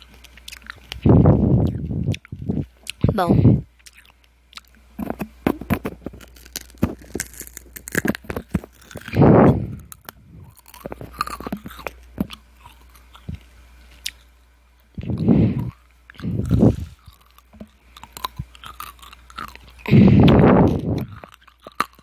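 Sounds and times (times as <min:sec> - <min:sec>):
lollipop being crunched: 0:03.8 - 0:13.4, 0:15.1 - 0:22.0.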